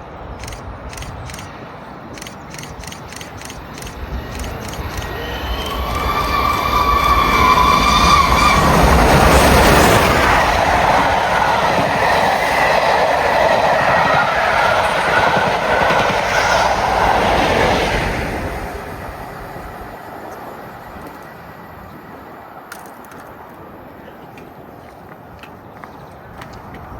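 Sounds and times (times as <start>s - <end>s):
train wheels clattering: 0.4s - 10.6s.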